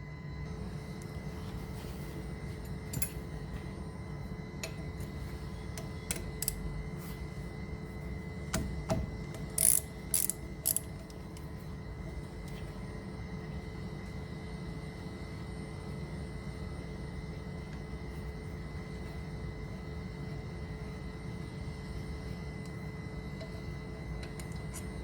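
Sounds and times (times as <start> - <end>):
steady low hum: 0.0 - 25.0
metal tools clinking on metal: 2.6 - 3.4.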